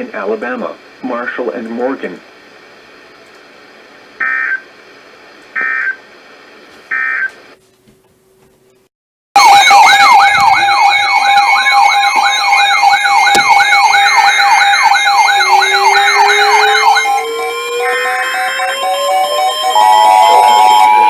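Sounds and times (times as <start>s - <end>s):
electronic yelp siren: 4.2s - 4.6s, 5.6s - 6.0s, 6.9s - 7.3s, 9.4s - 21.0s
lower siren winding up: 9.4s - 21.0s.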